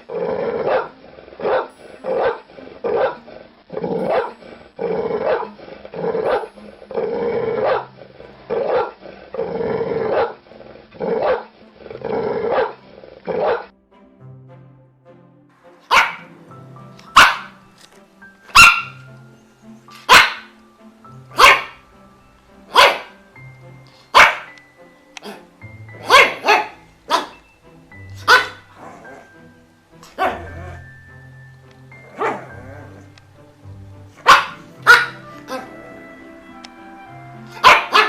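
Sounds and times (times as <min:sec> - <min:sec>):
soft background music: 0:00.0 - 0:38.0
dog barking: 0:00.6 - 0:03.2, 0:04.0 - 0:04.4, 0:05.2 - 0:06.5, 0:07.6 - 0:07.9, 0:08.5 - 0:09.0, 0:10.1 - 0:10.4, 0:11.1 - 0:11.5, 0:12.5 - 0:13.7, 0:15.9 - 0:16.3, 0:17.1 - 0:17.6, 0:18.5 - 0:19.0, 0:20.0 - 0:20.6, 0:21.3 - 0:21.8, 0:22.7 - 0:23.2, 0:24.1 - 0:24.6, 0:26.0 - 0:27.4, 0:28.2 - 0:29.1, 0:30.1 - 0:30.8, 0:32.1 - 0:32.5, 0:34.2 - 0:35.7, 0:37.5 - 0:38.0.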